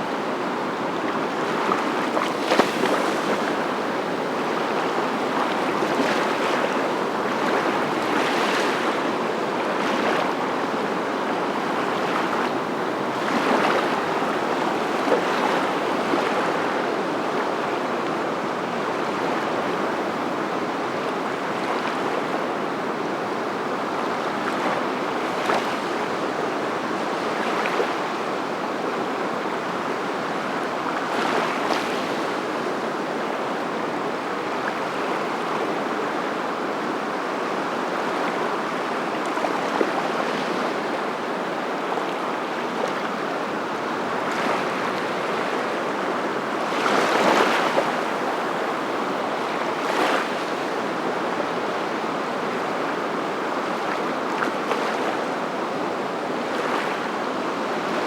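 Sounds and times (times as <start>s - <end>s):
surf rushing: 1.5s - 8.8s, 46.7s - 50.8s.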